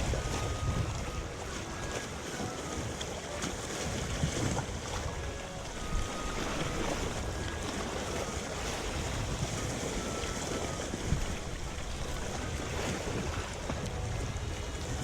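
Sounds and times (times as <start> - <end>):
sea waves washing ashore: 0.0 - 15.0
wind buffeting microphone: 0.0 - 15.0.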